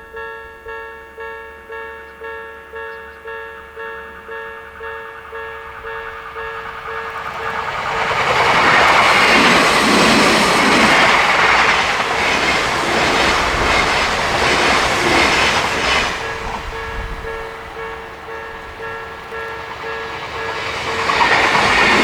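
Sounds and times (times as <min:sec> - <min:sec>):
level crossing warning bell: 0:00.0 - 0:22.0
train passing: 0:02.2 - 0:22.0
wheels clacking over rail joints: 0:05.3 - 0:22.0.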